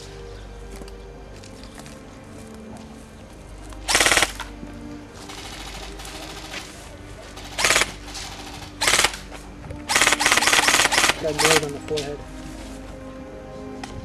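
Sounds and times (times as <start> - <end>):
background music: 0.0 - 14.0
airsoft gun bursts: 3.9 - 4.4, 7.4 - 9.2, 9.9 - 11.7.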